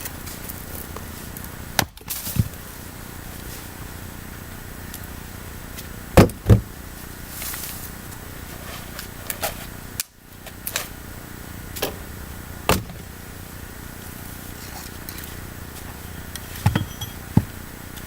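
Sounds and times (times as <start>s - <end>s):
wooden knocks of firewood: 1.8s - 2.6s, 6.2s - 6.7s, 12.7s - 13.0s, 16.5s - 17.6s.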